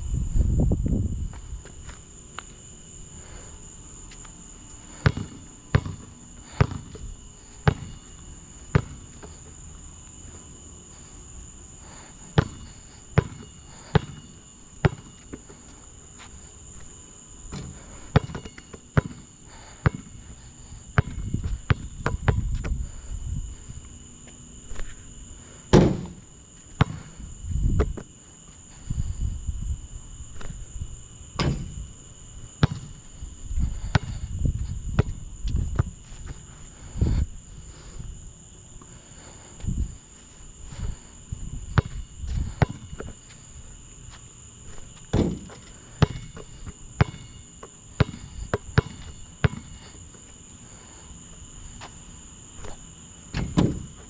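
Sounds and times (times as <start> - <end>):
crickets chirring: 0.0 - 54.0
basketball bouncing on hard court: 5.0 - 7.0, 7.6 - 8.0, 8.7 - 9.1, 12.4 - 15.2, 17.6 - 20.2, 21.0 - 22.6, 26.8 - 27.0, 32.6 - 33.0, 33.9 - 34.2, 41.8 - 42.0, 42.6 - 43.0, 45.1 - 47.4, 48.0 - 49.8.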